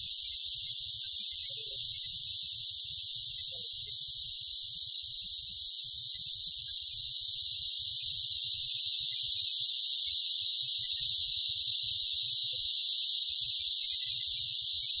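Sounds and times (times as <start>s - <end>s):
high-pitched hiss: 6.8s - 15.0s.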